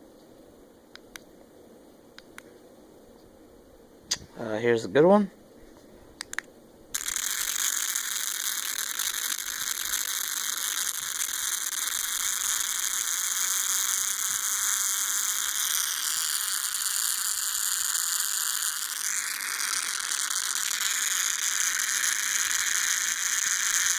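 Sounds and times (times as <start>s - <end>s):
harsh mechanical buzzing: 6.9s - 23.9s.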